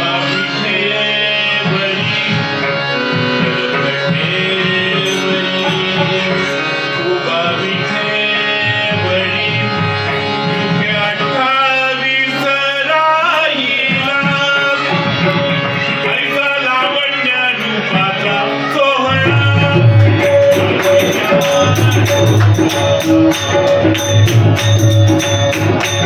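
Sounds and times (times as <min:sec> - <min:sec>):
harmonium melody: 0:00.0 - 0:26.0
person singing: 0:00.0 - 0:26.0
hand drum beat: 0:19.1 - 0:26.0.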